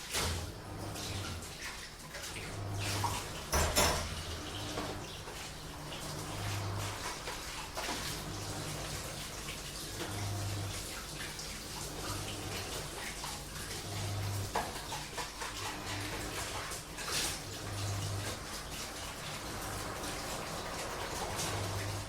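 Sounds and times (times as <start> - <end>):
dishes washed by hand: 0.0 - 22.0
washing machine humming: 0.0 - 22.0
water splashing: 0.0 - 22.0
dishes clattering: 2.9 - 5.2.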